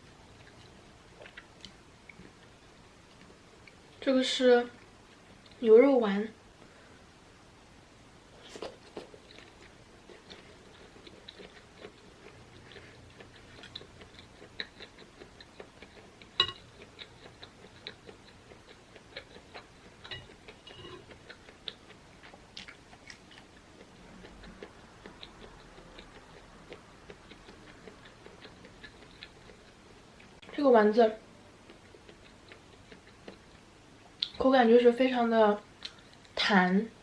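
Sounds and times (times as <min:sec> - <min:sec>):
mouth chewing clicks and smacks: 0:08.5 - 0:30.6, 0:31.6 - 0:34.4.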